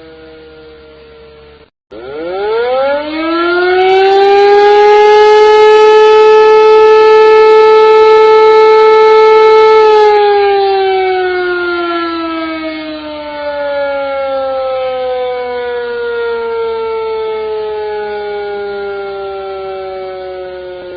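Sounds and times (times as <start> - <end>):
siren wailing: 0.0 - 20.9.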